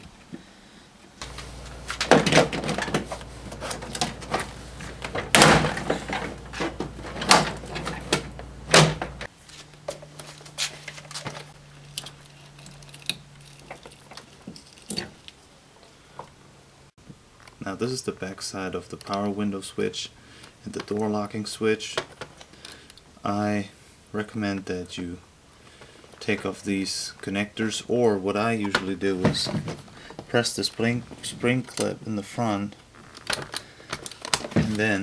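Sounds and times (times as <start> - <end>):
low steady hum: 0.0 - 21.6
panel rustling and clicking: 1.2 - 9.3, 33.1 - 35.0.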